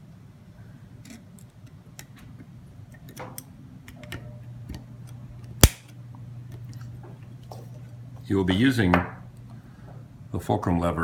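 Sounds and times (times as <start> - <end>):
sharp loud snap: 5.6 - 5.9.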